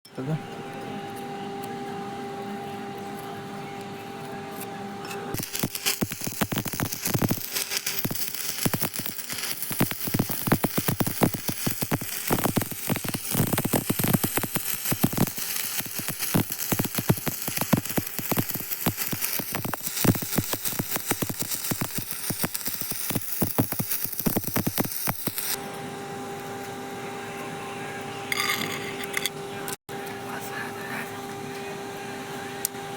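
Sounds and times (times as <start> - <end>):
steady hum with tone: 0.1 - 32.9
electric arc welding crackle: 5.3 - 25.6.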